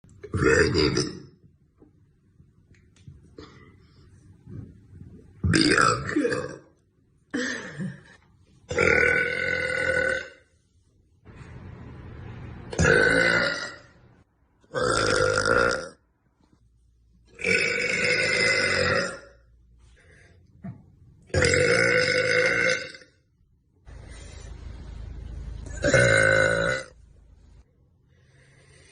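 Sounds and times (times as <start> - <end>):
woman belching: 5.5 - 6.7, 8.7 - 10.4, 12.7 - 13.9, 14.7 - 16.0, 17.4 - 19.3, 21.3 - 23.1, 25.7 - 27.0.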